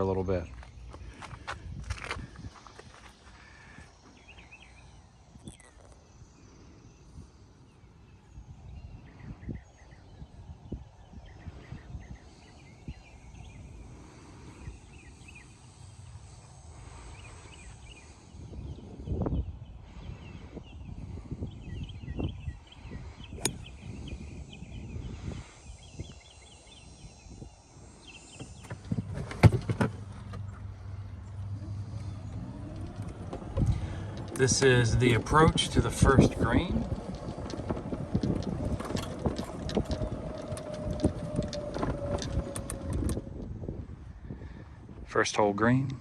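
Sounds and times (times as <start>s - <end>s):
birds chirping: 0.0s - 43.5s
faint steady whine: 0.0s - 46.0s
wind buffeting microphone: 0.0s - 46.0s
golf cart rumble: 11.2s - 44.7s.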